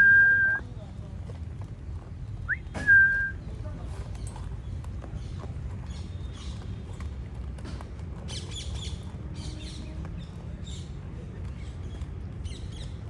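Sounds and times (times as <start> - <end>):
small birds chirping: 3.4 - 7.1, 8.2 - 13.0.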